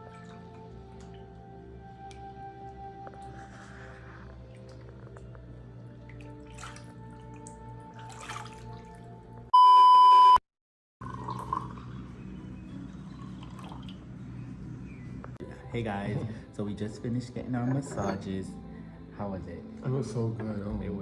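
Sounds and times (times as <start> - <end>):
soft slow background music: 0.0 - 9.5, 11.0 - 21.0
loud steady beep: 9.6 - 10.4.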